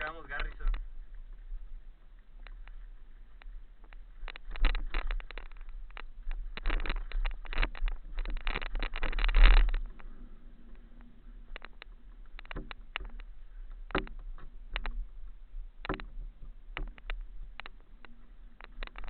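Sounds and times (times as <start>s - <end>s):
bike rattling over rocks: 4.2s - 10.2s.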